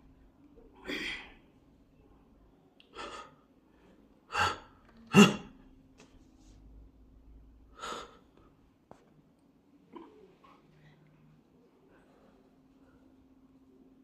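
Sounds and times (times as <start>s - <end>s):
person sneezing: 4.3s - 5.6s
person gasping breath: 7.7s - 8.3s.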